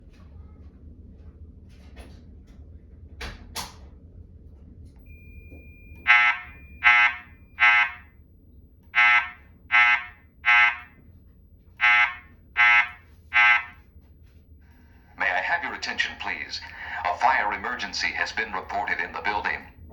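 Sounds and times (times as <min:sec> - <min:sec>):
fire alarm horn beeps: 0:05.0 - 0:19.9.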